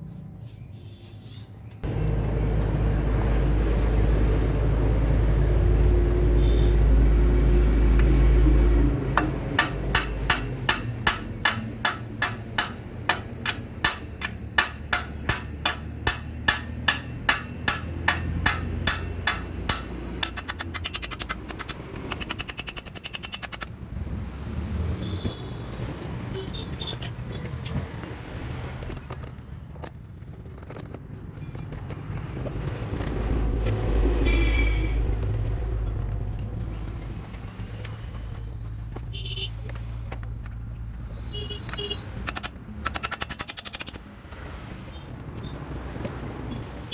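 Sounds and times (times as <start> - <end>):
hammering metal on metal: 9.1 - 23.6.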